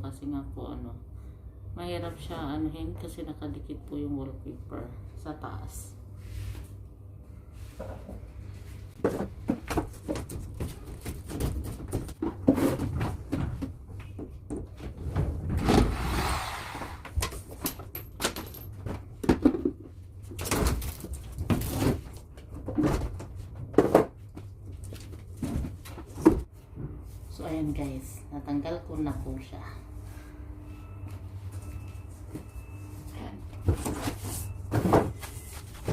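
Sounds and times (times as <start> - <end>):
knocks and scrapes: 8.9 - 17.6.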